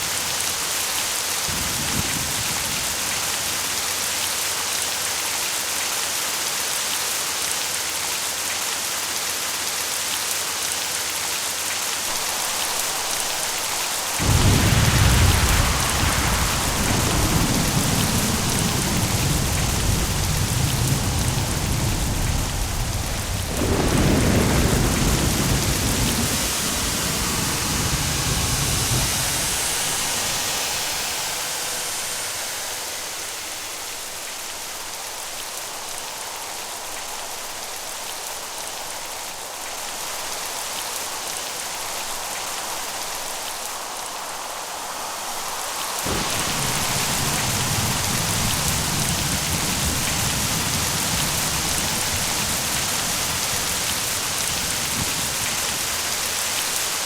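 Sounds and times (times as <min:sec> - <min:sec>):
heavy rain: 0:00.0 - 0:57.0
thunder rumbling: 0:12.1 - 0:33.9, 0:46.1 - 0:57.0.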